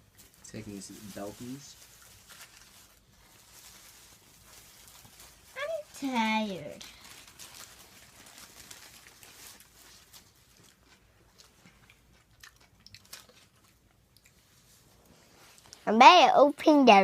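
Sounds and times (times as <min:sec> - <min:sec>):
person chewing a sandwich: 0:07.1 - 0:15.8.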